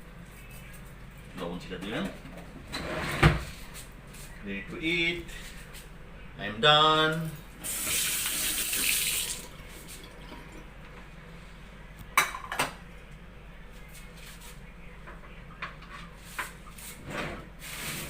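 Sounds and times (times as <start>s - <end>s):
tap water running: 7.6s - 10.7s
dishes clinking: 12.2s - 12.8s.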